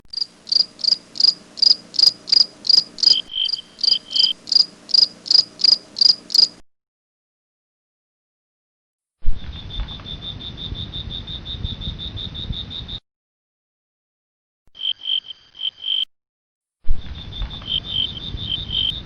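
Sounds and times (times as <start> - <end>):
crickets chirping: 0.1 - 6.6, 9.6 - 13.0, 14.8 - 16.0, 17.2 - 19.0
lower-pitched cricket chirping: 0.1 - 6.6, 9.5 - 13.0, 14.8 - 16.0, 17.1 - 19.0.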